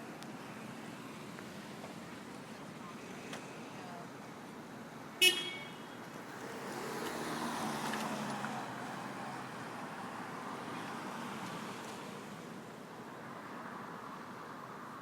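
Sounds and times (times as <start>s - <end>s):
car horn toot: 5.2s - 6.0s
vehicle passing: 6.2s - 12.5s.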